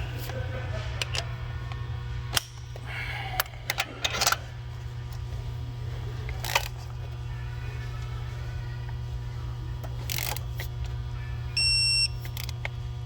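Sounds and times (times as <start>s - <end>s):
steady low hum: 0.0s - 13.0s
hand tools clicking and clinking: 3.4s - 4.4s.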